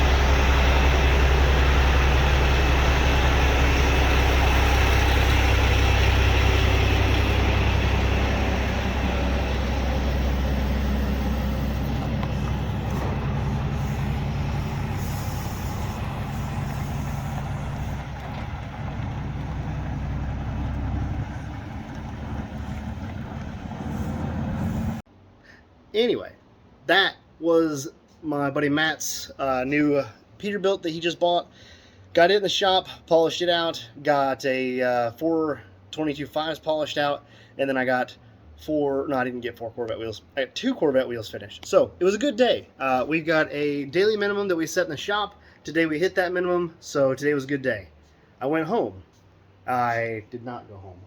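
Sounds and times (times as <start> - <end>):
diesel truck engine running: 0.0 - 25.0.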